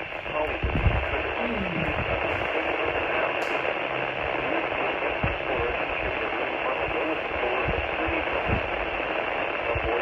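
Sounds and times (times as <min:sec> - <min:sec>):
low crackles and thumps: 0:00.0 - 0:10.0
radio static hiss: 0:00.0 - 0:10.0.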